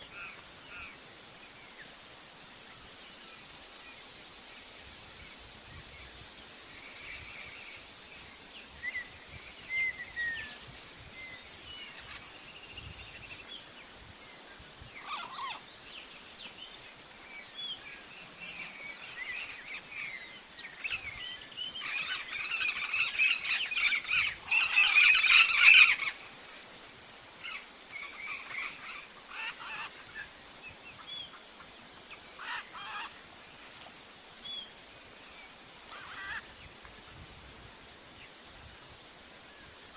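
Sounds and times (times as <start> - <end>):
high insect trill: 0.0 - 39.9
rapid bird calls: 15.0 - 15.9, 18.2 - 33.7, 35.9 - 36.7
birds chirping: 15.0 - 33.1.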